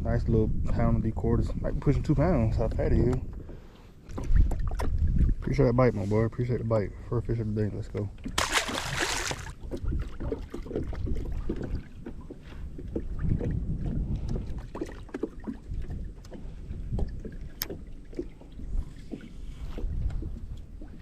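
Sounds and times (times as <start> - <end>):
wind and water rumble: 0.0 - 21.0
knocks and taps in plastic boat: 2.5 - 5.4, 9.6 - 21.0.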